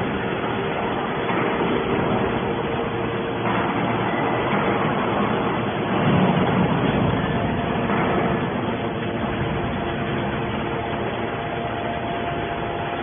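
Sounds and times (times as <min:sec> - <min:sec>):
hydraulic baler running: 0:00.0 - 0:13.0.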